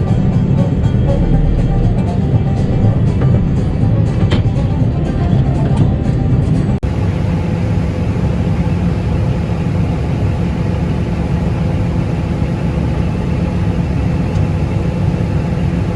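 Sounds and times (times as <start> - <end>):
heavy machinery engine droning: 6.8 - 15.9.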